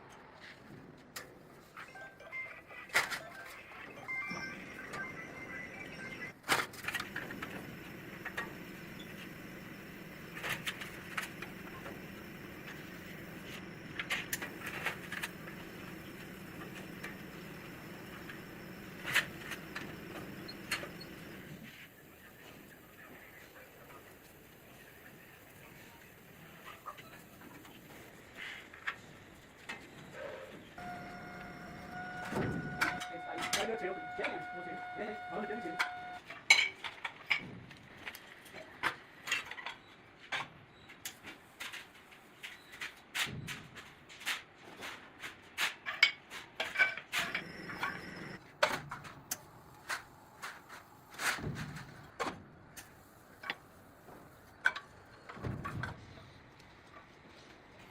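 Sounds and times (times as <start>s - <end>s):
low machine hum: 7.0s - 23.3s, 30.8s - 36.2s.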